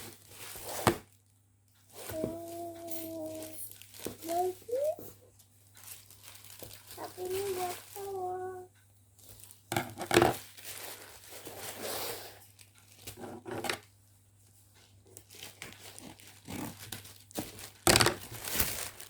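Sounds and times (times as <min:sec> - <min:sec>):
packaging crinkling and tearing: 0:02.4 - 0:05.0, 0:05.7 - 0:08.2, 0:09.2 - 0:13.7, 0:15.1 - 0:19.0.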